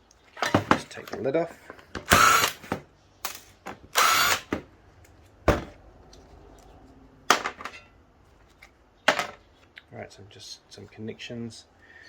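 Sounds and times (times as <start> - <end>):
power driver whirring: 2.1 - 2.7, 3.3 - 4.5.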